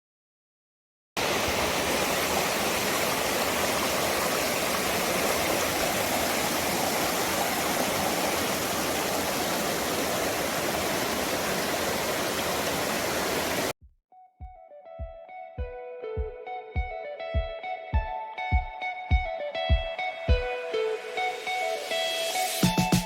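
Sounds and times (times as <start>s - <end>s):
stream rushing: 1.2s - 13.7s.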